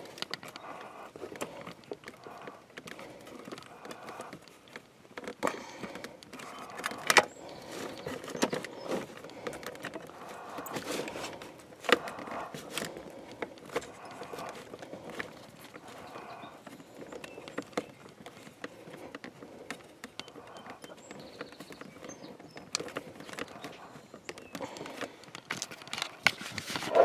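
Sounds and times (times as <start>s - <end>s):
hands clicking and rattling mechanism: 0.0s - 27.0s.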